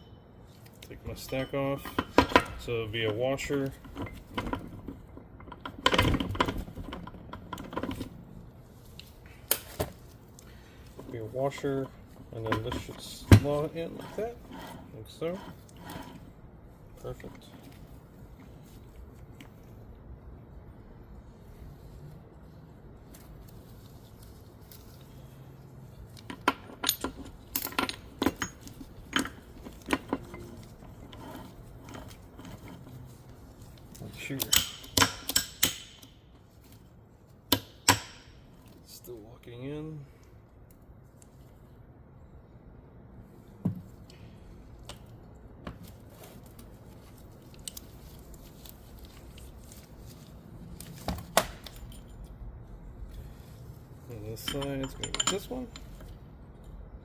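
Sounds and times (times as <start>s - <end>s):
metal gear parts clinking: 0.8s - 4.3s, 54.0s - 56.7s.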